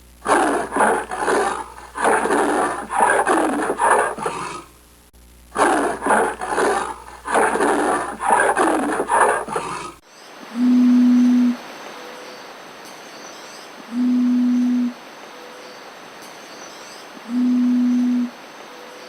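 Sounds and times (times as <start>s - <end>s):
animal roaring call: 0.2s - 4.7s, 5.6s - 10.0s.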